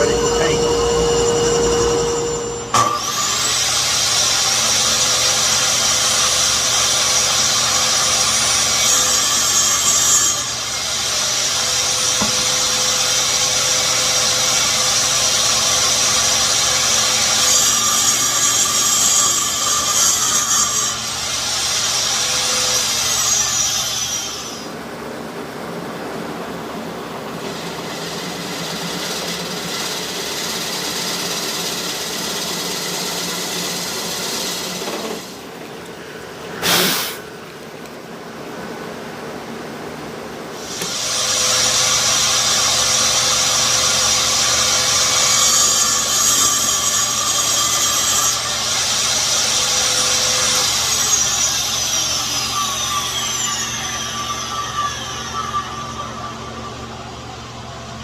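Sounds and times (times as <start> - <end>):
steady machine hum: 0.0 - 3.8
woodworking machine whining: 0.0 - 38.5, 40.6 - 58.0.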